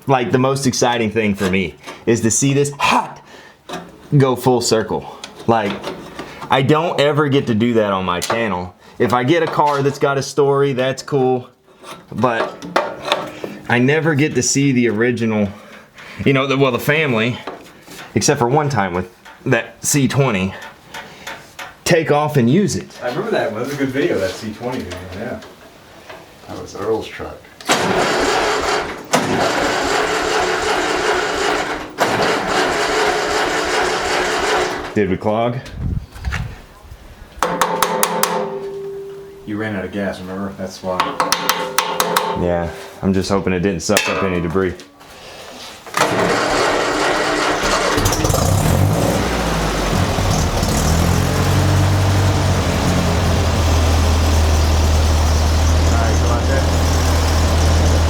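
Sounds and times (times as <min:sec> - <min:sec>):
engine cranking on starter: 0:27.6 - 0:35.0, 0:46.0 - 0:58.0.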